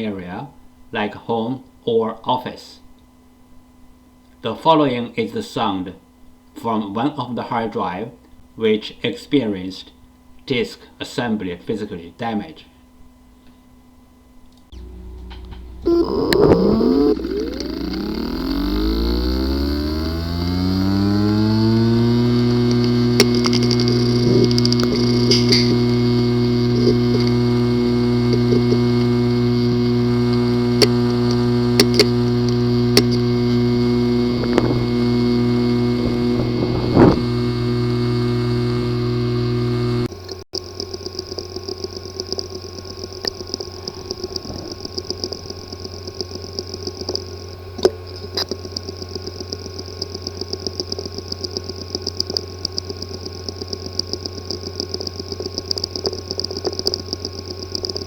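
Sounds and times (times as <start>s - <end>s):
hard drive buzzing hum: 0.0s - 58.0s
hard drive sharp clicks: 14.6s - 58.0s
high whine: 14.7s - 58.0s
rapid irregular ticking: 14.7s - 58.0s.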